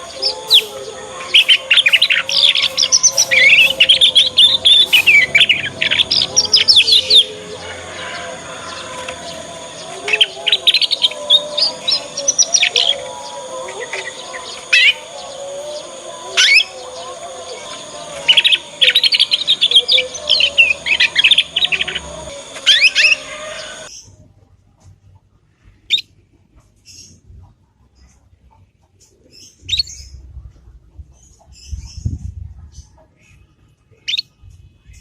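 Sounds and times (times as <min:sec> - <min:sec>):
canary twittering and trilling: 0:00.0 - 0:24.0.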